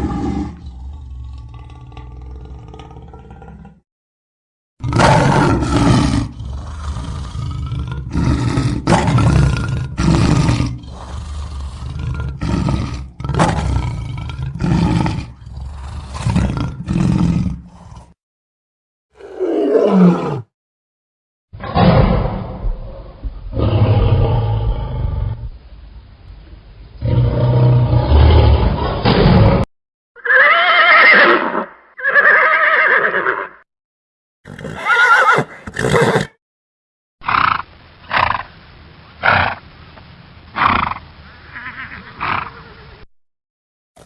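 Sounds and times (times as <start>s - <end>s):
animal roaring: 0.0s - 3.8s, 4.8s - 18.2s, 19.2s - 20.5s, 21.6s - 25.5s, 27.0s - 29.7s.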